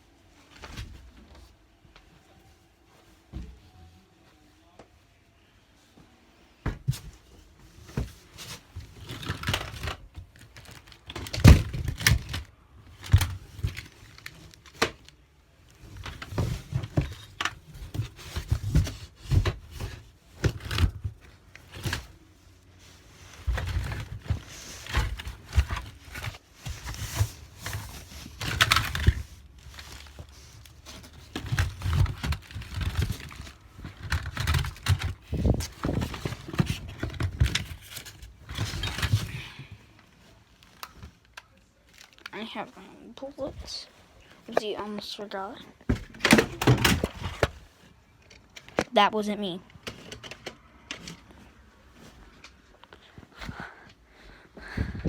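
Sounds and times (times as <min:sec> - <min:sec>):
objects knocking and thudding: 0:15.8 - 0:22.1, 0:23.4 - 0:39.8, 0:45.8 - 0:47.8.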